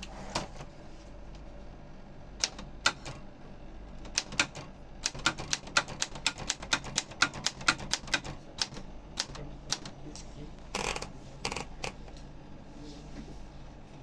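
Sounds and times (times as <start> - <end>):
manual typewriter keystrokes: 2.4 - 3.2, 4.0 - 10.0, 10.7 - 12.0.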